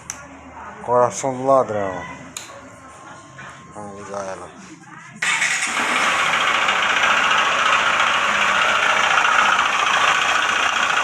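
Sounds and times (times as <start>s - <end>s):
motorcycle engine idling: 5.2s - 11.0s
rapid engine knocking: 5.2s - 11.0s.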